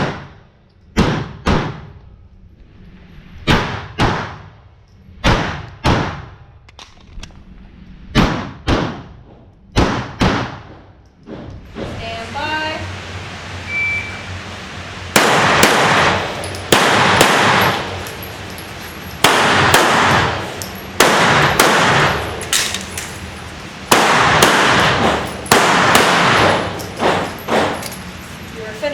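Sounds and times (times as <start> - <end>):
pistol shots with echo: 15.2 - 18.6, 19.2 - 22.9, 23.9 - 27.7.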